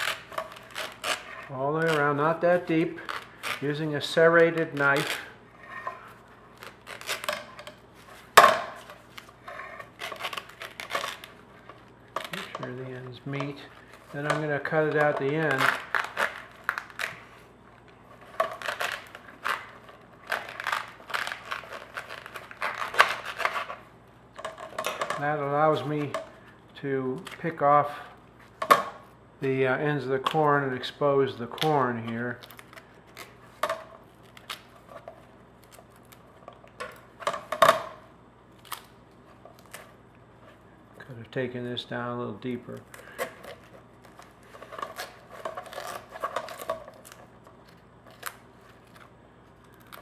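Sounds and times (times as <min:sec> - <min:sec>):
corn husk snapping: 0:00.0 - 0:05.3, 0:12.2 - 0:17.3.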